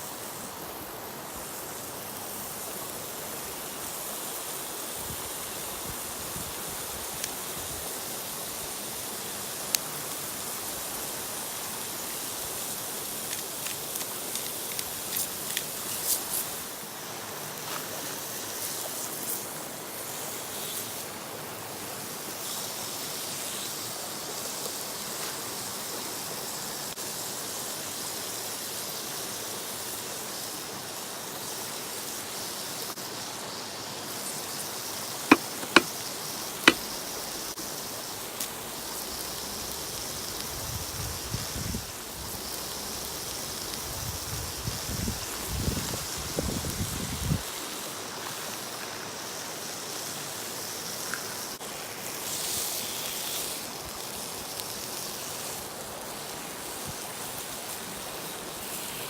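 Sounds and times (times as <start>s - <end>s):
sharp clicks: 35.3s - 35.9s.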